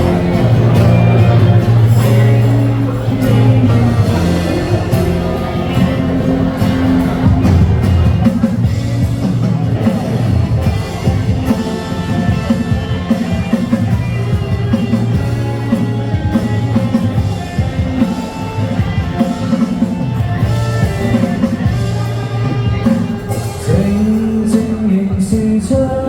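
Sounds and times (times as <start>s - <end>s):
instrumental pop-rock music: 0.0s - 26.0s.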